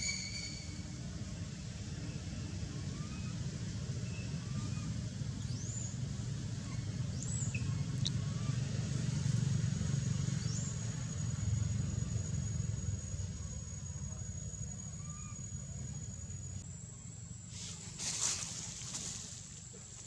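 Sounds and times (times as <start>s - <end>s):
short high squeaks: 0.0s - 0.8s.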